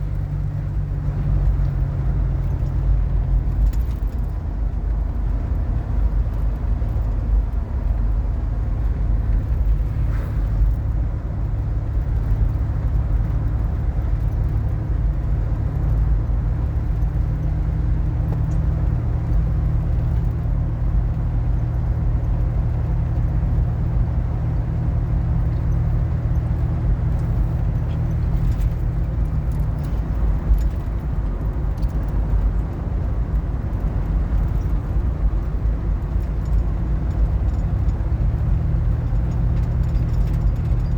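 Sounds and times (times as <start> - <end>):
car road rumble inside cabin: 0.0 - 40.9.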